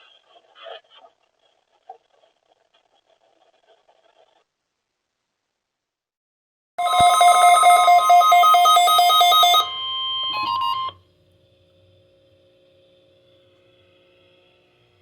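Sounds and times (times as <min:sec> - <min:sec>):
rapid electronic alarm beeping: 0:06.8 - 0:10.9
steady high alert tone: 0:06.8 - 0:10.9.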